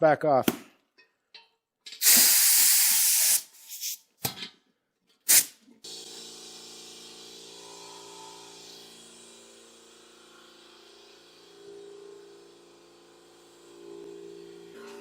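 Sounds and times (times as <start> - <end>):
compressed air blast: 2.0 - 4.0, 5.3 - 9.7.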